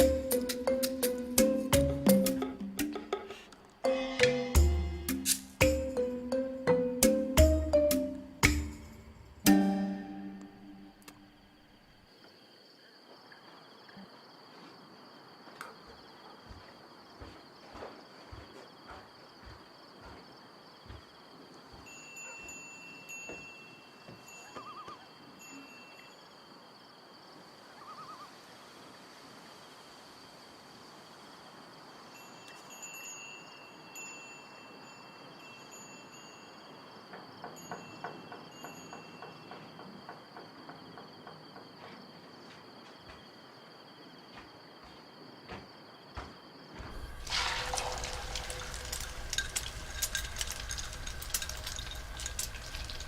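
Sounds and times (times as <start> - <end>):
insects chirring: 0.0 - 53.0
food sizzling in a pan: 46.9 - 53.0.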